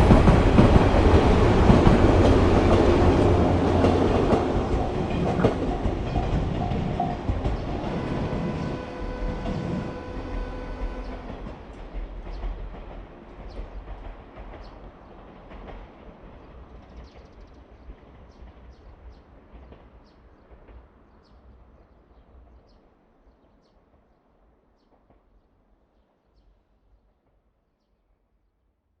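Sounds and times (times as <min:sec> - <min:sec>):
train wheels clicking: 0:00.0 - 0:21.0
train rumble: 0:00.0 - 0:25.4.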